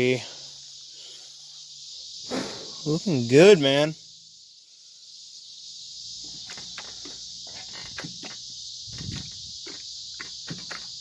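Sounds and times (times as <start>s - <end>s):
crickets chirring: 0.0s - 11.0s.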